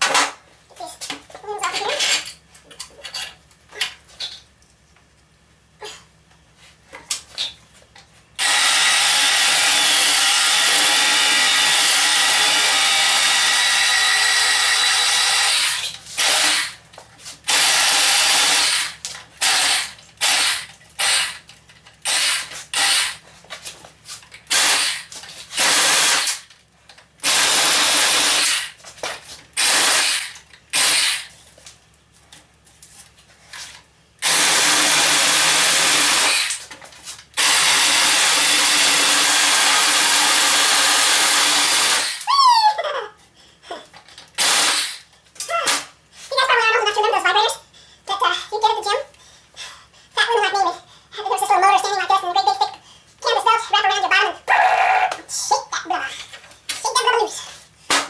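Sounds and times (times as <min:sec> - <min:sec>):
cordless power tool motor running: 0:08.4 - 0:16.8.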